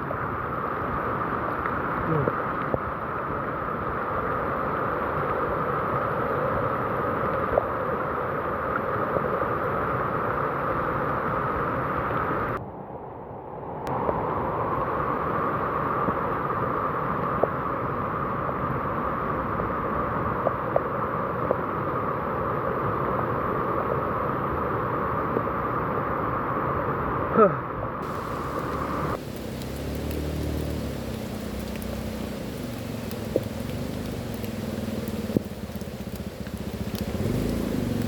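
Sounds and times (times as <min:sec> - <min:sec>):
heavy rain: 0:00.1 - 0:07.3, 0:28.0 - 0:38.0
fast-flowing river rushing: 0:28.0 - 0:38.0.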